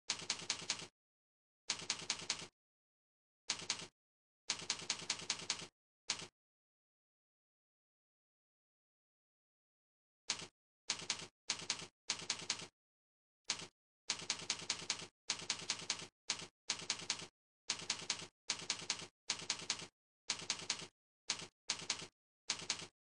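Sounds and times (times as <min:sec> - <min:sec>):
mouse click rattle: 0:03.5 - 0:03.9, 0:04.5 - 0:06.3, 0:10.3 - 0:12.7.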